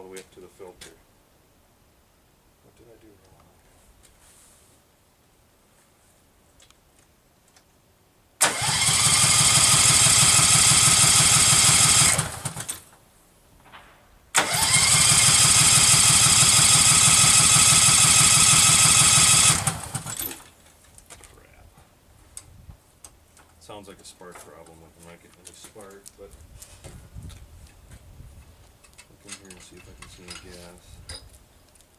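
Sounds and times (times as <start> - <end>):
tractor engine cranking: 8.4 - 12.9, 14.3 - 20.6.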